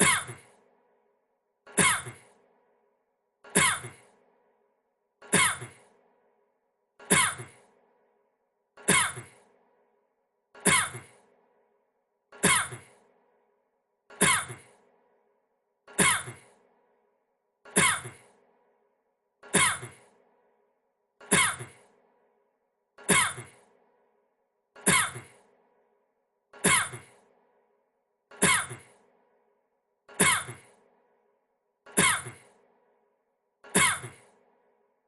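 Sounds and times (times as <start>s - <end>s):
man coughing: 3.5s - 4.1s.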